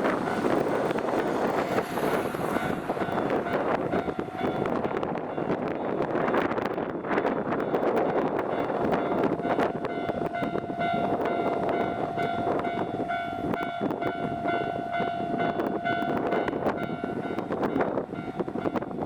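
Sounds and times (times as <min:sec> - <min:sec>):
steady rushing noise: 0:00.0 - 0:19.0
level crossing warning bell ringing: 0:07.7 - 0:19.0.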